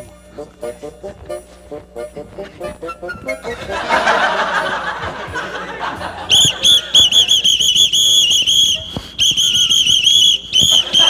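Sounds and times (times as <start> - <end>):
whistle toots: 0.6 - 3.7, 6.3 - 11.0.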